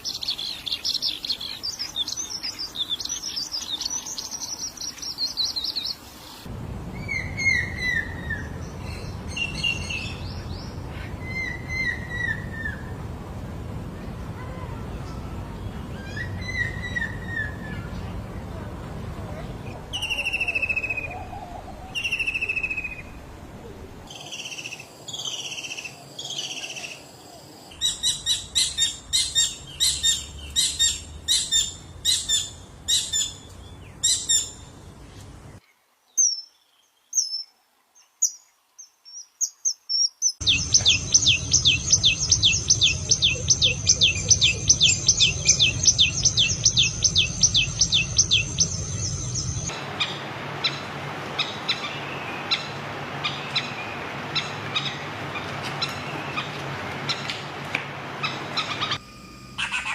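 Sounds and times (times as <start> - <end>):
descending whistled bird notes: 6.9 - 10.3, 15.9 - 17.9, 19.9 - 23.2, 39.9 - 50.1
sharp repeated bird calls: 40.4 - 57.4, 59.6 - 59.9.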